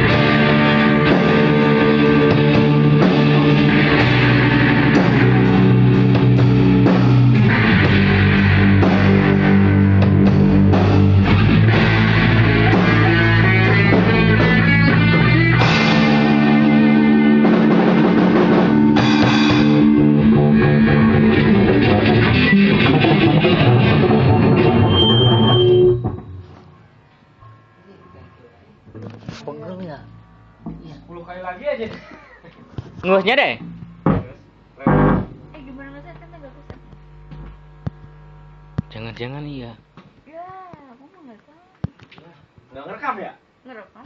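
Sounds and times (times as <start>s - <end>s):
drum kit: 0.0s - 26.7s, 33.2s - 36.0s
guitars playing chords: 0.0s - 27.9s, 33.4s - 40.0s.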